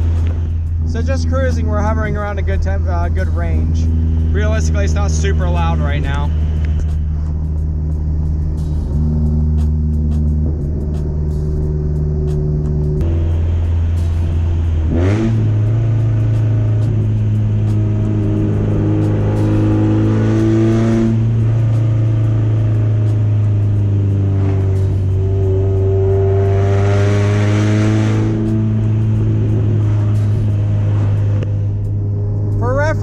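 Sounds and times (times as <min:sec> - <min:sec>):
car engine drone through open exhaust: 0:00.0 - 0:33.0.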